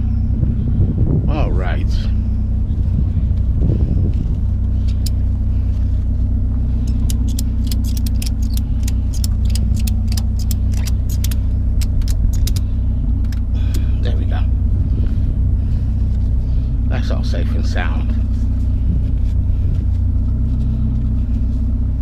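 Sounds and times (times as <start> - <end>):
vehicle engine idling: 0.0 - 22.0
quick sharp metallic clicks: 6.9 - 12.6.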